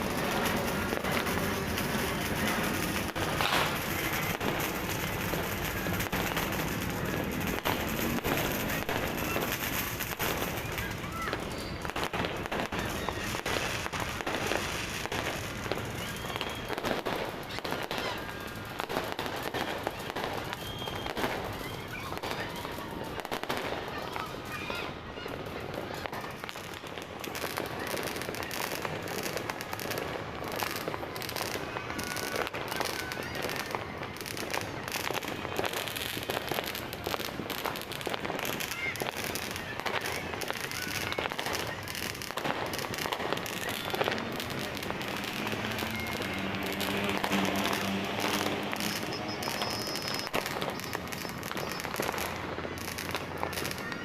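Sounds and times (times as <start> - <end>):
fireworks and firecrackers crackling: 0.0 - 54.0.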